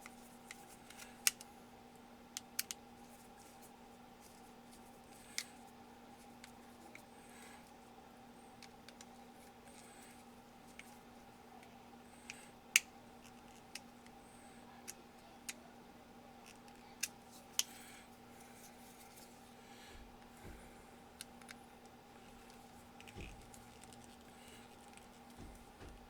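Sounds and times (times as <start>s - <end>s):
faint steady hum: 0.0s - 26.0s
light clicks and taps: 22.4s - 26.0s.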